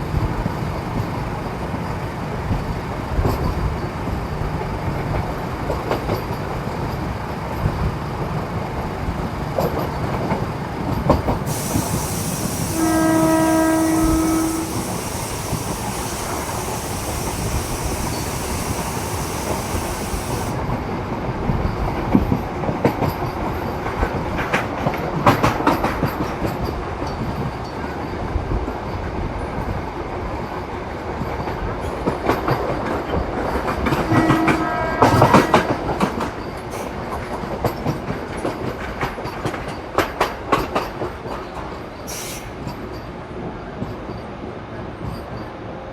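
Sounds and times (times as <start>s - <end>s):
rail-joint clicks: 0.0s - 45.7s
train wheels on rails: 0.0s - 45.9s
high hiss: 11.4s - 20.6s
train horn: 11.5s - 16.8s, 33.8s - 36.1s.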